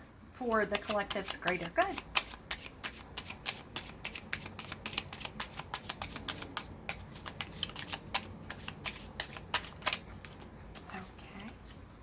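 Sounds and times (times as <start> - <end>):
cards being shuffled: 0.7 - 11.8.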